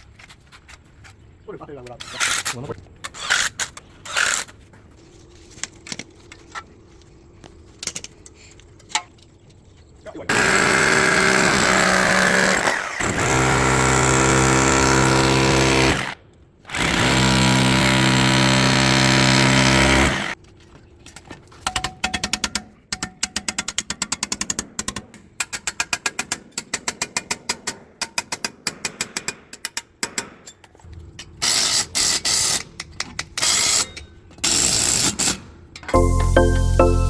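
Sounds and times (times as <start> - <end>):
hammer drill running: 10.3 - 20.4.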